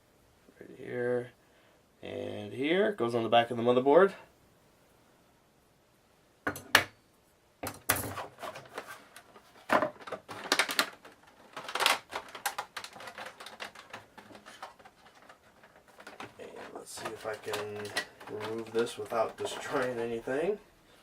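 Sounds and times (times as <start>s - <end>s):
parts clicking and clattering: 7.6s - 20.2s
packaging crinkling: 8.2s - 20.3s.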